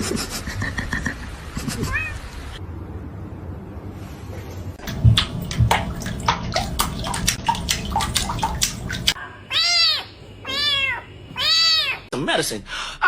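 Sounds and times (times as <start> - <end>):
water sloshing and splashing: 4.3 - 12.0.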